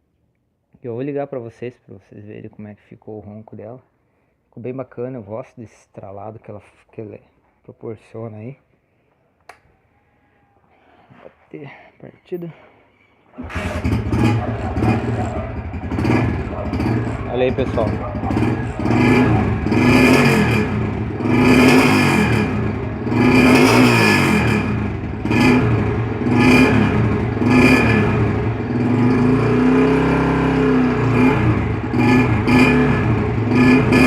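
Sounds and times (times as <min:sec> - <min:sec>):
motorcycle engine revving: 0:13.4 - 0:34.0.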